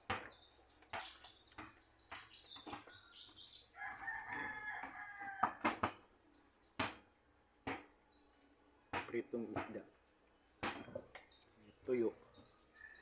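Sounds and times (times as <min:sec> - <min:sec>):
rooster crowing: 0:03.8 - 0:05.8, 0:12.7 - 0:13.0.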